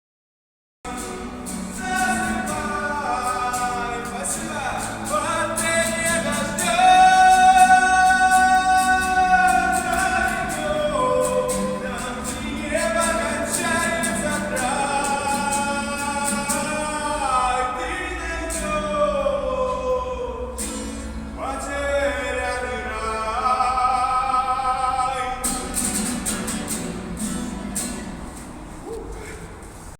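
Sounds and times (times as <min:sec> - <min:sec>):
person singing: 0:00.9 - 0:20.6.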